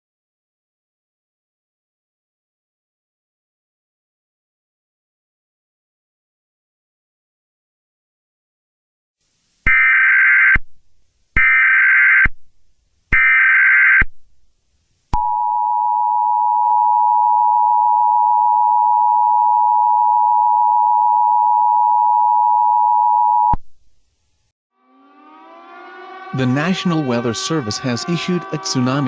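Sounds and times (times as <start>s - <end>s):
screechy data signal bursts: 9.7s - 10.6s, 11.4s - 12.3s, 13.1s - 14.1s.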